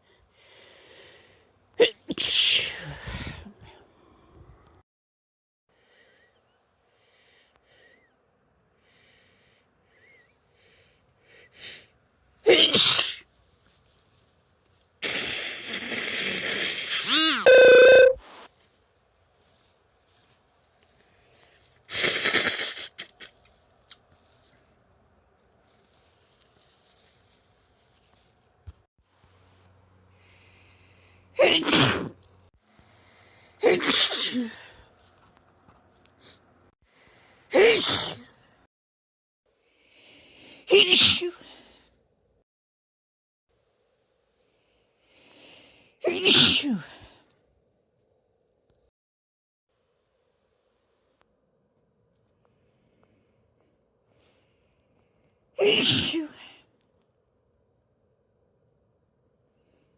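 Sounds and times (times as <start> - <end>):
drawn-in breath: 0.0 - 1.5, 8.8 - 11.9, 32.7 - 33.6, 43.7 - 46.0
person sneezing: 12.5 - 13.2, 31.4 - 32.1, 33.6 - 34.7, 37.5 - 38.3, 40.7 - 41.4, 46.0 - 47.0, 55.6 - 56.6.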